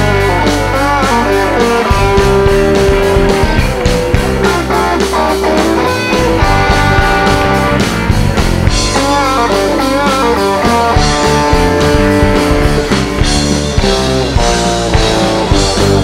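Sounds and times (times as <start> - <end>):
guitar sliding bending notes: 0.0 - 16.0
live rock band playing: 0.0 - 16.0.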